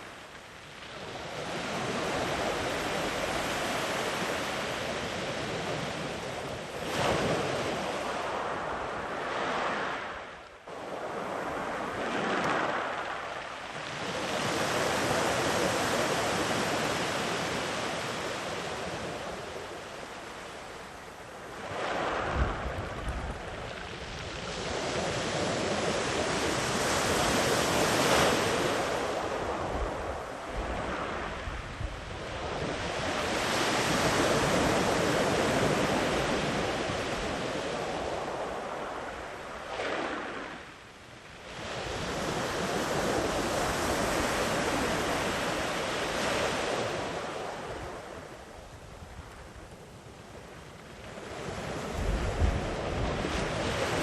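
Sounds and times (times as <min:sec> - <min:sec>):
sea waves breaking on beach: 0:00.0 - 0:54.0
wind rumble on microphone: 0:00.0 - 0:54.0.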